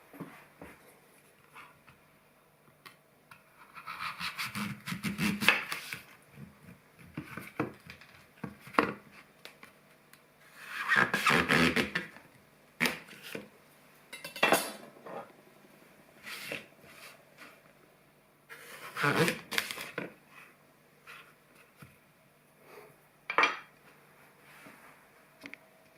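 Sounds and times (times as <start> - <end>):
apple squeaking: 18.6 - 19.6.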